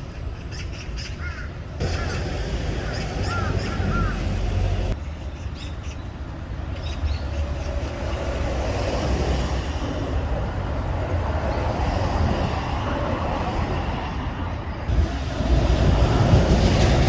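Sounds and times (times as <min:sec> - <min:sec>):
vacuum machine running: 0:01.8 - 0:05.0.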